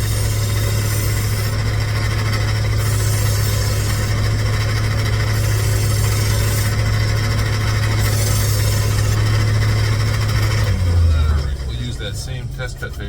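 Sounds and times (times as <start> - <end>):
knife grinding on abrasive: 0.0 - 9.5
sharpener motor hum: 0.0 - 10.8.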